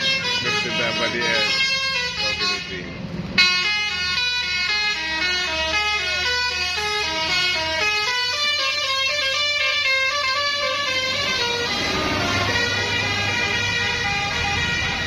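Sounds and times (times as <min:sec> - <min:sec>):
bus engine rumbling: 0:00.0 - 0:15.0
musical air horn melody: 0:03.4 - 0:15.0.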